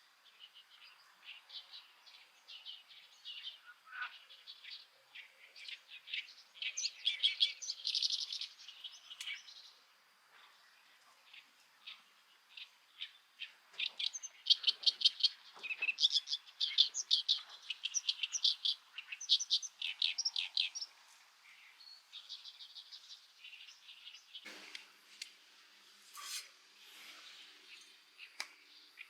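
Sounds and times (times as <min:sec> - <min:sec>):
small songbird chirping: 0:00.0 - 0:26.0, 0:26.6 - 0:29.0
bird trill: 0:13.8 - 0:20.9.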